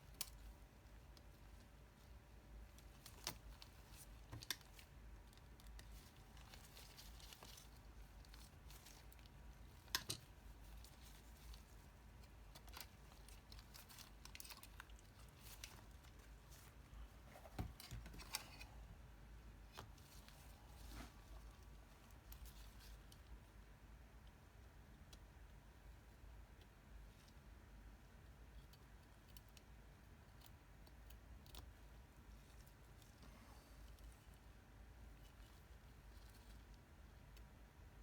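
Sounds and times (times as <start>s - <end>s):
small tools clicking and tapping: 9.9s - 10.3s.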